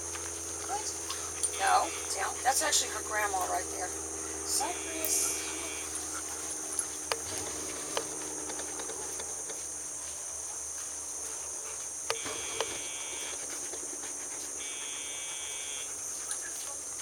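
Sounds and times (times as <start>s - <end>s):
insects chirping: 0.0s - 17.0s
short buzzes: 0.7s - 9.6s, 12.0s - 13.6s, 14.5s - 16.0s.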